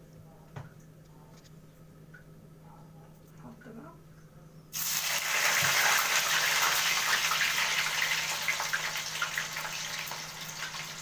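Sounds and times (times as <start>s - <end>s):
potatoes sizzling in hot oil: 4.7s - 11.0s.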